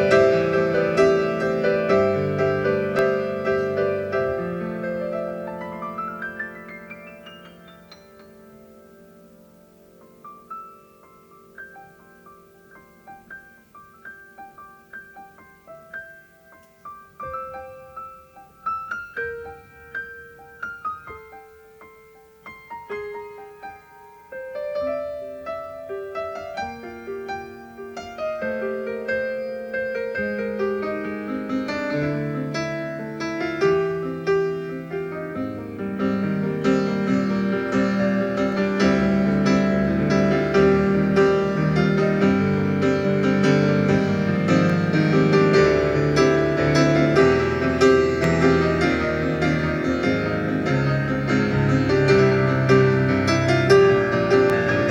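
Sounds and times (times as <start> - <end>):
slow gentle piano melody: 0.0 - 54.9.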